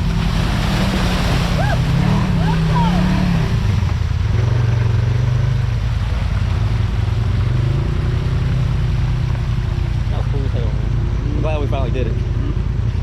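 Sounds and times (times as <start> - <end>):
vehicle engine running at low revs: 0.0 - 13.0.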